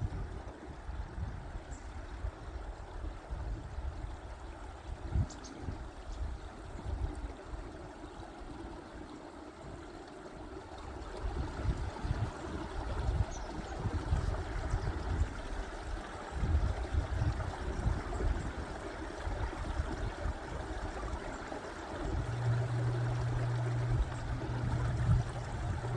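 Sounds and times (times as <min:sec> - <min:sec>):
stream running over rocks: 0:06.6 - 0:25.9
wind buffeting microphone: 0:16.2 - 0:20.3, 0:22.0 - 0:25.9
low hum: 0:22.0 - 0:25.9.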